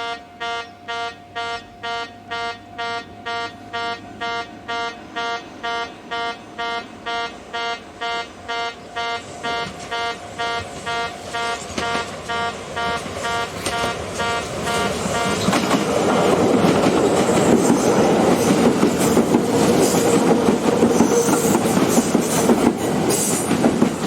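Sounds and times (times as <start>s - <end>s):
crossing warning buzzer beeps: 0.0s - 15.6s
approaching train noise: 0.0s - 24.0s.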